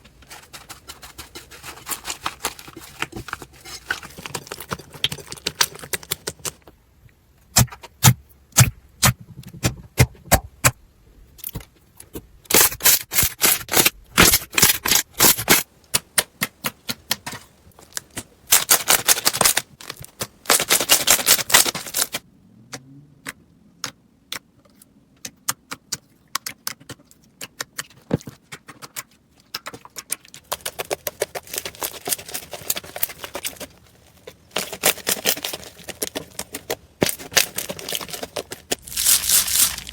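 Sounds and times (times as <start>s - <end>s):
slime crackling and popping: 37.3s - 39.9s.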